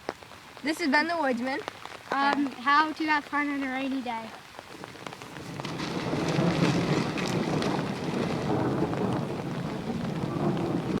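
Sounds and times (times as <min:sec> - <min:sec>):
hard rain: 0:00.0 - 0:11.0
raindrop ticks: 0:00.0 - 0:11.0
low rumble of thunder: 0:04.6 - 0:11.0.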